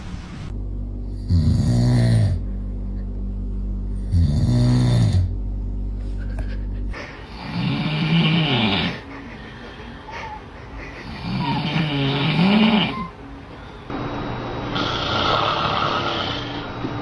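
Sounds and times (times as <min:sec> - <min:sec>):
loud snoring: 0:01.1 - 0:02.4, 0:04.0 - 0:05.3, 0:07.2 - 0:09.1, 0:11.0 - 0:13.1, 0:14.8 - 0:16.7.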